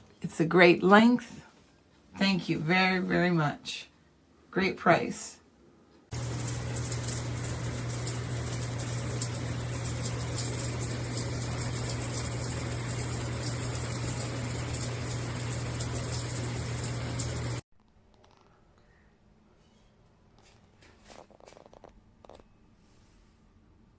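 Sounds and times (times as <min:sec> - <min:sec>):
shower spraying water: 0:06.1 - 0:17.6.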